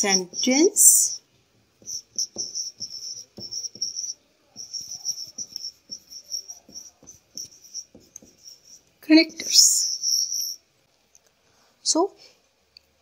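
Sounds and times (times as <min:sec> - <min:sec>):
squeaky pen strokes: 0:00.0 - 0:01.2, 0:01.8 - 0:10.6.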